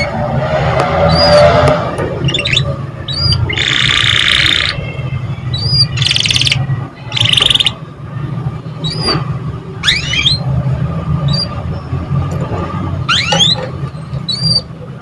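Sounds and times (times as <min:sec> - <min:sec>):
canary singing: 0:01.1 - 0:01.5, 0:02.2 - 0:07.9, 0:08.7 - 0:09.2, 0:09.8 - 0:10.6, 0:11.2 - 0:12.1, 0:13.0 - 0:14.8.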